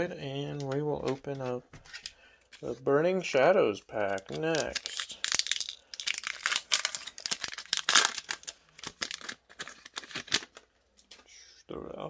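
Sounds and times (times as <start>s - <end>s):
foil wrapper crinkling and tearing: 4.0s - 10.7s.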